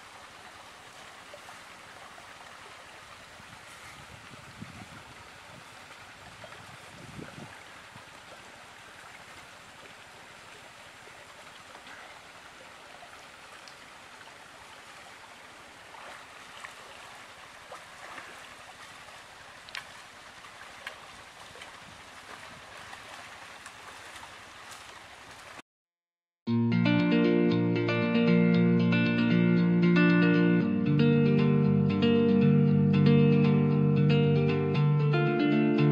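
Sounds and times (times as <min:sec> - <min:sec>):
flowing water rushing: 0:00.0 - 0:25.6.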